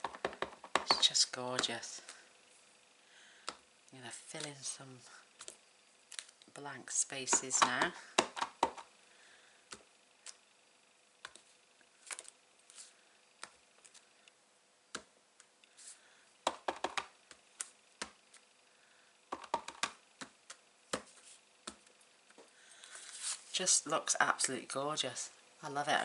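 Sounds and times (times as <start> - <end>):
stamp tapping on ink pad and card: 16.5 - 17.1.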